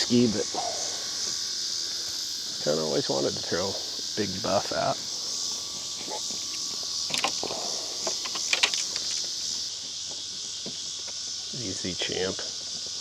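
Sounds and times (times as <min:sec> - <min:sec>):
high-pitched insect chorus: 0:00.0 - 0:13.0
gear handling clicks and knocks: 0:06.5 - 0:09.3.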